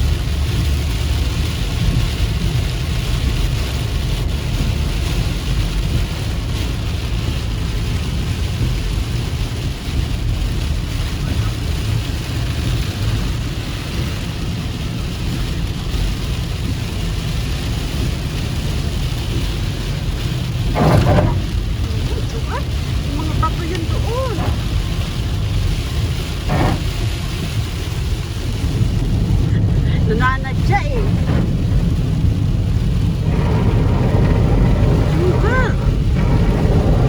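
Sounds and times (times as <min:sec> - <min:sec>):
car rumbling on road: 0:00.0 - 0:37.0
rain and spray hissing: 0:00.0 - 0:37.0.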